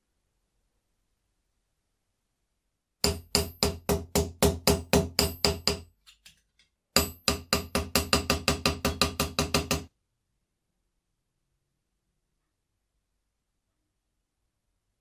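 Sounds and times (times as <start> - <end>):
hammer tapping metal: 3.0 - 6.2, 7.0 - 9.9.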